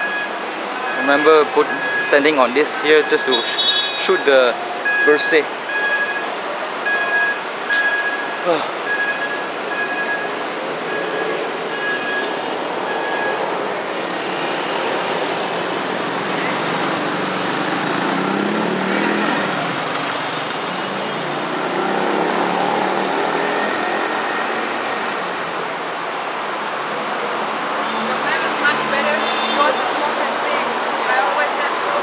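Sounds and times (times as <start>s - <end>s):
city street traffic: 0.0s - 32.0s.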